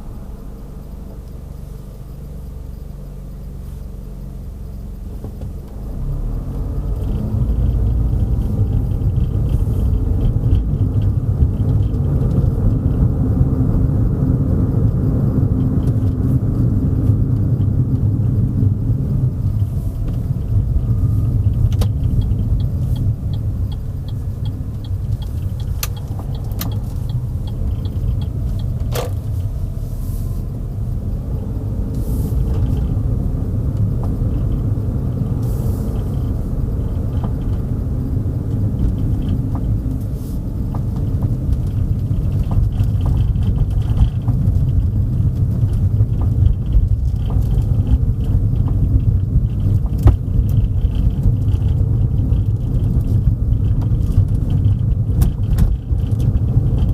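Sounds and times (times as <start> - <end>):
car road and engine rumble: 0.0 - 56.9
light ticking: 20.0 - 29.6
sharp clicks: 21.7 - 29.2.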